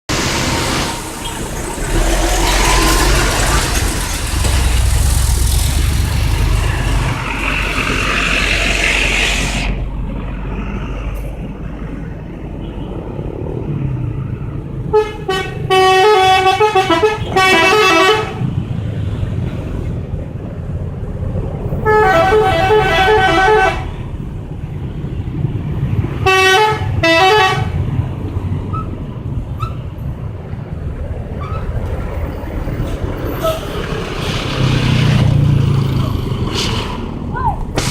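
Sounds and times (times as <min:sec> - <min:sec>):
loud rushing noise: 0:00.1 - 0:11.9, 0:34.0 - 0:37.9
low engine rumble: 0:00.2 - 0:26.2
multi-tone musical air horn: 0:14.9 - 0:18.4, 0:21.9 - 0:23.9, 0:26.2 - 0:27.7.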